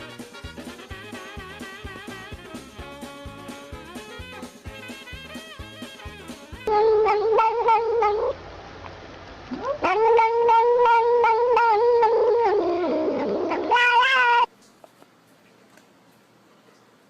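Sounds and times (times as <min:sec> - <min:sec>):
dog howling: 0:06.7 - 0:08.4, 0:09.6 - 0:14.5.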